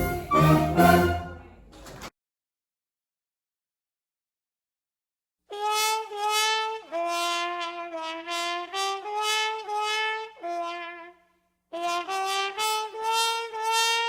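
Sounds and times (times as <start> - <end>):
brass band horns playing melody: 0.0 - 1.4, 5.5 - 11.1, 11.8 - 14.0.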